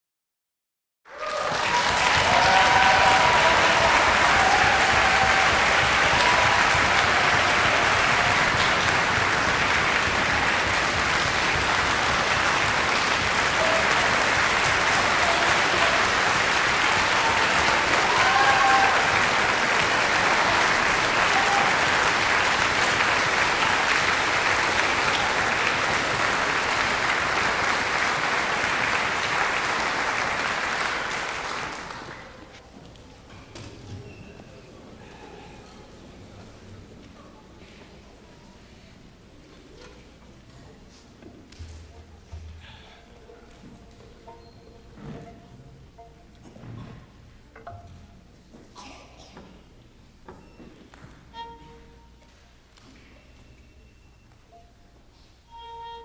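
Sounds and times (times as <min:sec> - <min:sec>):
audience applauding: 0:01.1 - 0:32.5.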